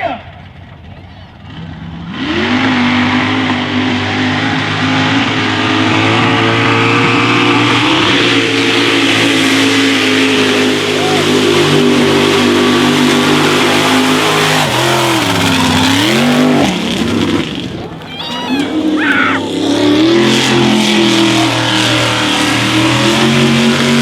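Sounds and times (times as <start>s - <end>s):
truck engine at high revs: 0.0s - 24.0s.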